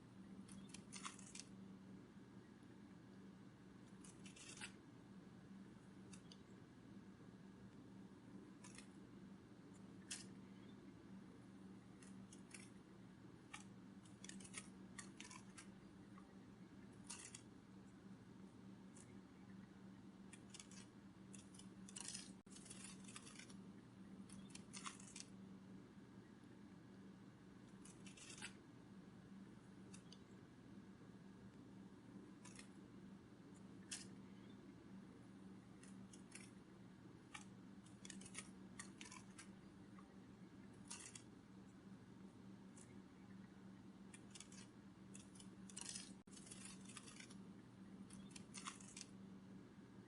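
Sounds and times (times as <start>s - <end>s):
low steady hum: 0.0s - 50.0s
papery wing-flutter rustles: 0.5s - 1.5s, 3.9s - 4.8s, 27.7s - 28.6s, 40.7s - 41.3s, 44.2s - 47.4s
soft clicks: 29.8s - 30.3s.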